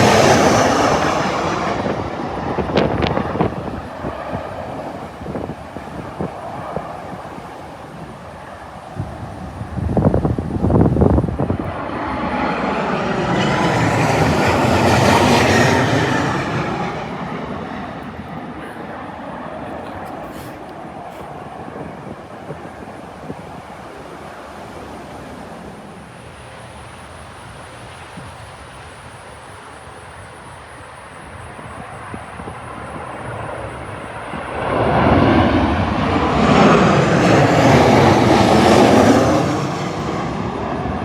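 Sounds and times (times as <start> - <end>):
jet plane passing overhead: 0.0 - 41.0.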